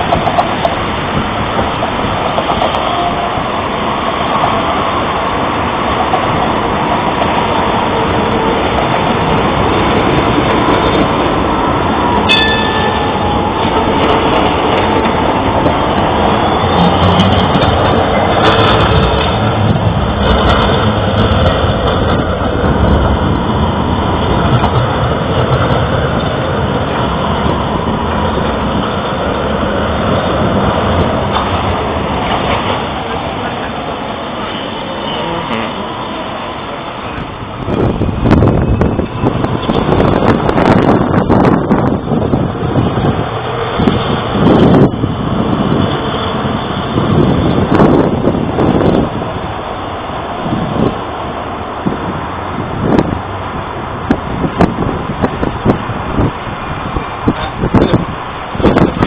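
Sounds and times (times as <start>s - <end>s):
tram rumbling on rails: 0.0s - 59.0s
high ringing tone: 12.3s - 13.4s.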